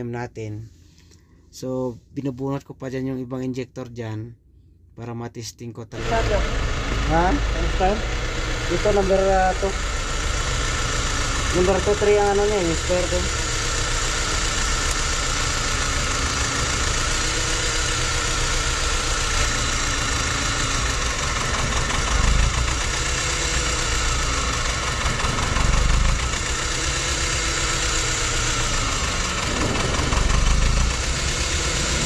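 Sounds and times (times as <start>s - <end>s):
car engine idling with misfire: 6.0s - 32.0s.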